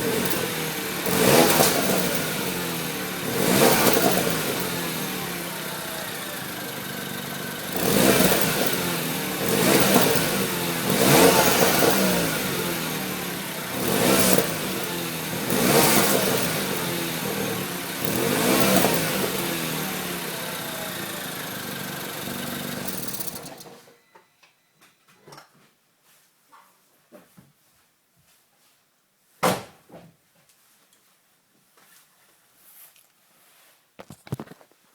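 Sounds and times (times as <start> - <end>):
car engine idling and revving: 0.0 - 23.7.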